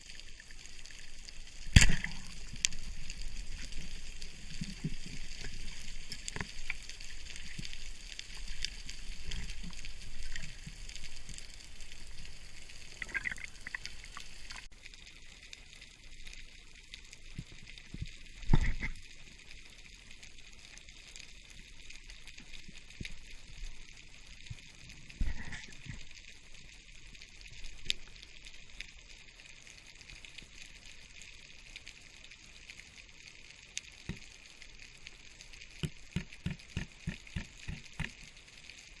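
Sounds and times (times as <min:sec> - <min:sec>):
small clicks: 0:27.4 - 0:38.9.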